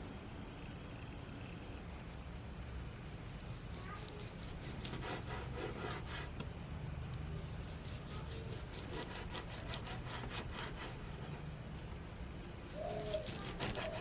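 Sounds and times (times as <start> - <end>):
knife sawing through steak: 3.4 - 6.3, 7.4 - 11.4, 12.6 - 14.0.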